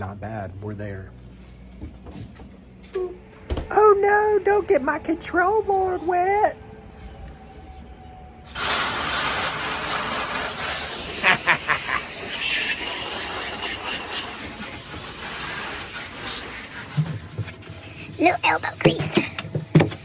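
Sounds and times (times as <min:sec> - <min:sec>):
water spraying hiss: 0:08.5 - 0:17.1.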